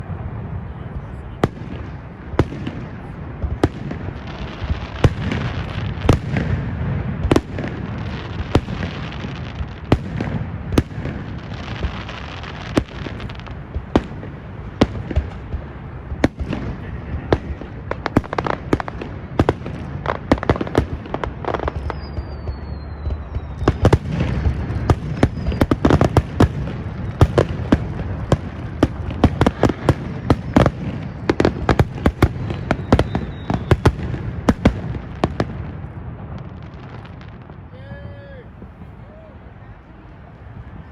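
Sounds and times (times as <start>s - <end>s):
fireworks bangs and crackling pops: 0.0s - 39.0s
falling firework whistle: 20.6s - 27.8s, 29.4s - 34.7s.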